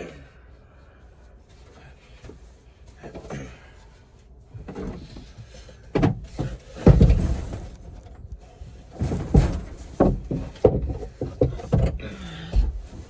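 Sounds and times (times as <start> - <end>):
wooden boards knocking and thumping: 5.9 - 13.0.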